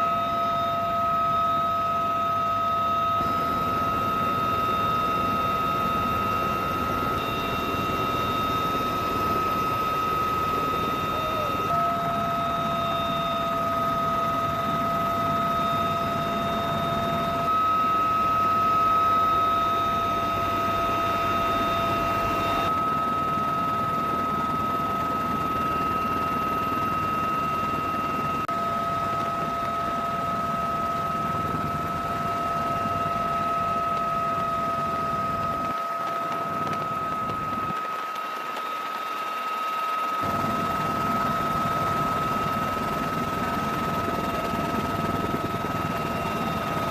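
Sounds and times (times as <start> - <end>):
helicopter engine whine: 0.0 - 46.9.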